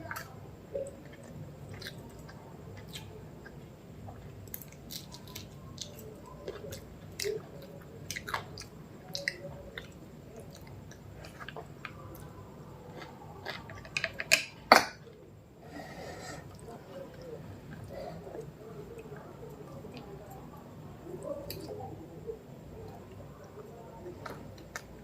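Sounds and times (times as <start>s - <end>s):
person chewing food: 0.1s - 14.4s.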